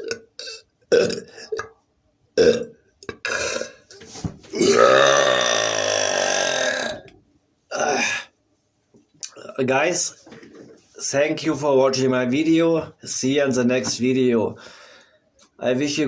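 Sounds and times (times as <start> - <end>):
man belching loudly: 0.0 - 1.8, 2.4 - 3.8, 4.5 - 7.1, 7.7 - 8.3.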